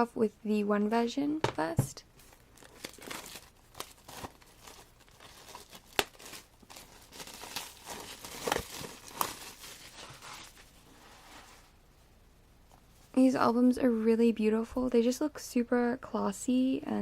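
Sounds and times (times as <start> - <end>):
plastic wrap crinkling and tearing: 2.2 - 10.9.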